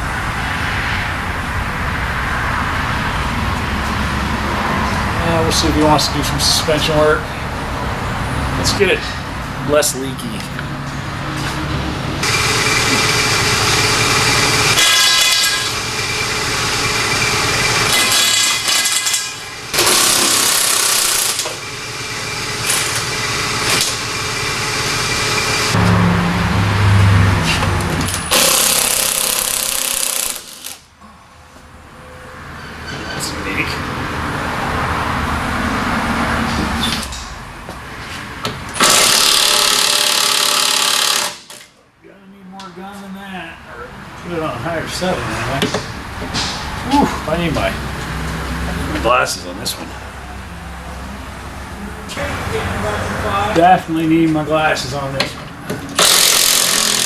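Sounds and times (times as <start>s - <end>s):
pneumatic impact wrench: 12.2s - 25.8s, 27.5s - 30.9s, 38.7s - 41.7s, 55.8s - 57.0s.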